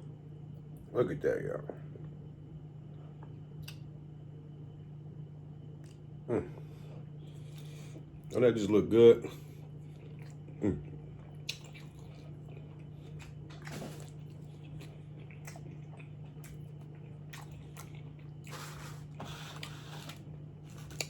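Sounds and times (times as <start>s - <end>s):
low steady hum: 0.0s - 21.0s
person chewing food: 5.8s - 8.4s, 9.4s - 21.0s.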